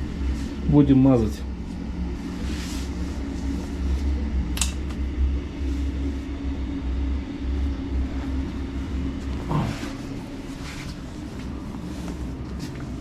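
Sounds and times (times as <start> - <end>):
sharp click: 4.6 - 4.8.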